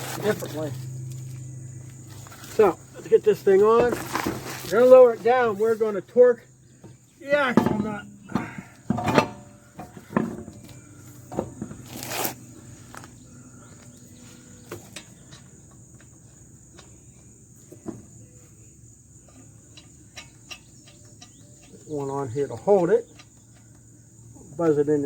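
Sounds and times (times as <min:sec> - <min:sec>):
insects trilling: 0:00.0 - 0:25.0
clicks and knocks of work: 0:06.8 - 0:11.8.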